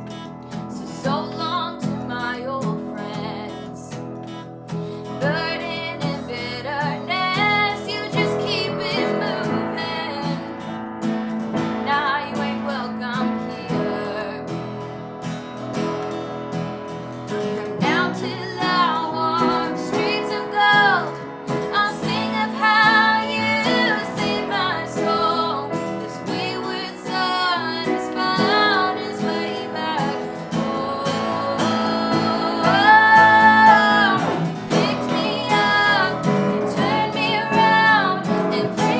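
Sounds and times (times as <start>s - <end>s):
strummed acoustic guitar: 0.0s - 38.9s
person singing: 17.8s - 38.9s.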